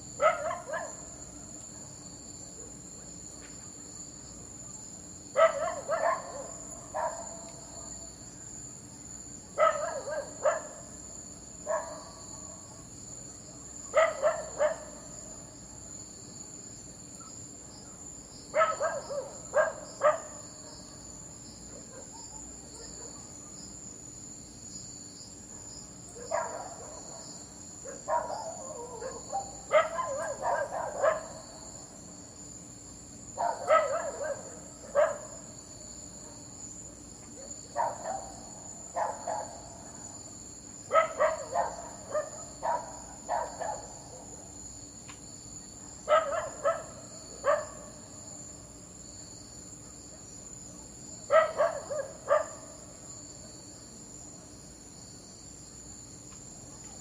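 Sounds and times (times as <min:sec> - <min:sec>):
crickets chirring: 0:00.0 - 0:57.0
dog barking: 0:00.2 - 0:01.1, 0:05.4 - 0:07.5, 0:09.6 - 0:10.9, 0:11.6 - 0:12.1, 0:13.9 - 0:15.1, 0:18.5 - 0:20.4, 0:21.7 - 0:23.3, 0:25.5 - 0:27.2, 0:27.8 - 0:31.4, 0:33.4 - 0:35.4, 0:37.4 - 0:39.8, 0:40.9 - 0:44.4, 0:46.0 - 0:48.0, 0:51.3 - 0:52.8.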